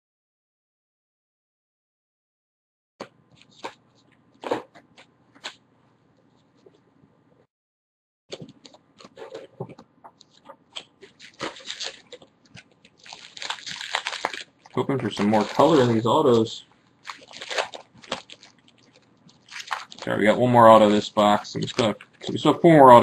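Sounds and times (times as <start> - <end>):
cards clicking and rustling: 8.3 - 16.4.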